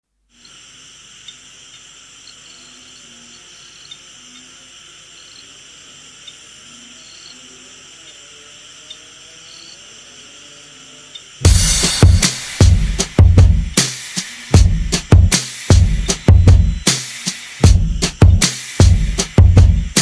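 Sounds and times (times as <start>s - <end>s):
steady hiss: 0.1s - 20.0s
small ticks: 0.3s - 11.4s.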